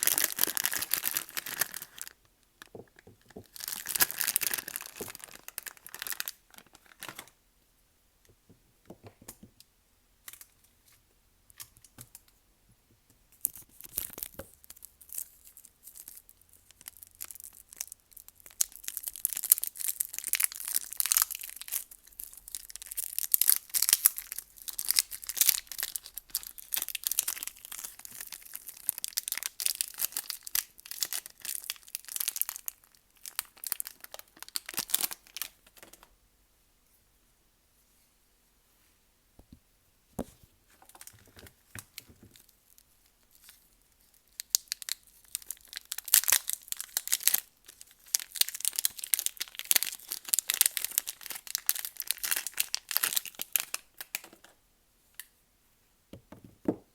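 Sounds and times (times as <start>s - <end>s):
wrapper crackling and tearing: 0.0s - 7.4s, 13.5s - 36.0s, 41.8s - 54.5s.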